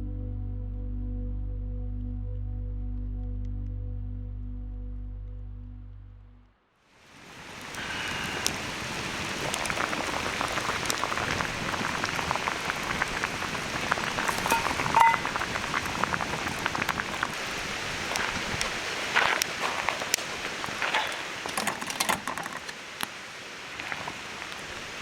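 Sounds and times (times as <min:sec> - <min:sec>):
wood fire sizzling and popping: 0:07.0 - 0:25.0.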